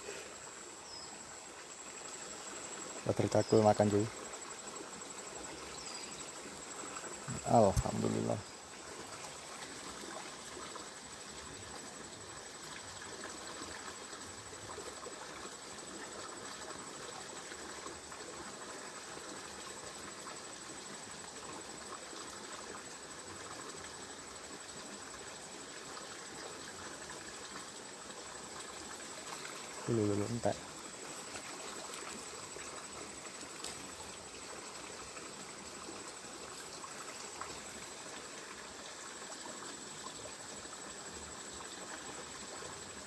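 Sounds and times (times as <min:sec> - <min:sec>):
high-pitched insect drone: 0:00.0 - 0:08.6
stream water running: 0:00.0 - 0:43.0.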